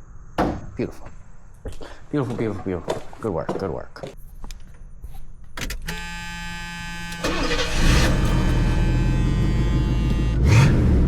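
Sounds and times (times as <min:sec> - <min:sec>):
starter motor whine: 0:05.9 - 0:10.8
car engine running: 0:06.1 - 0:11.0.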